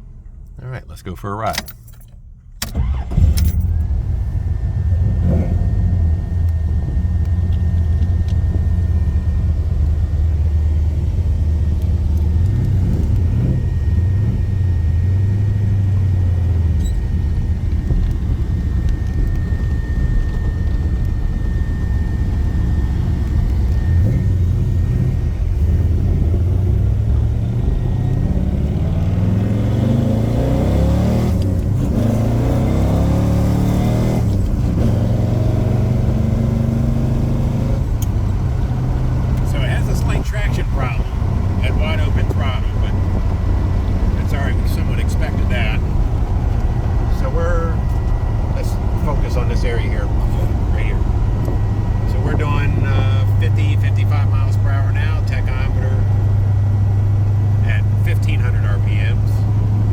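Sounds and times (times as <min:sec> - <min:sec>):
car engine starting and idling: 0:00.0 - 0:59.9
faint high whine: 0:13.6 - 0:25.9.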